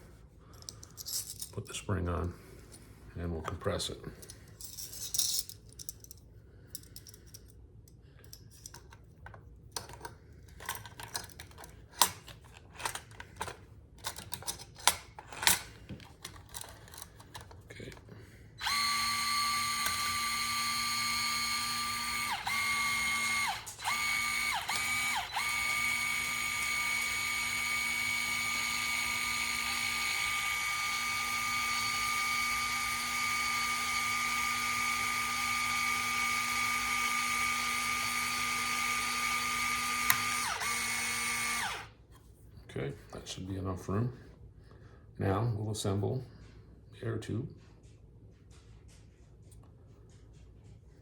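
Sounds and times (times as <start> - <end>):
small electric motor whining: 18.6 - 41.9.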